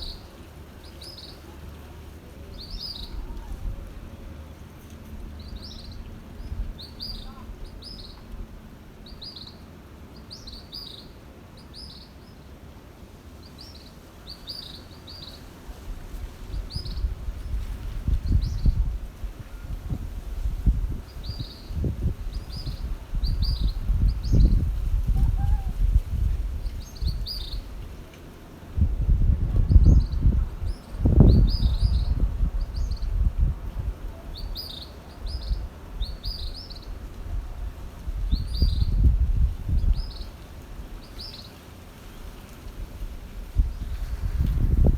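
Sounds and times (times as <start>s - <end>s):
low uneven rumble: 0.0s - 9.4s.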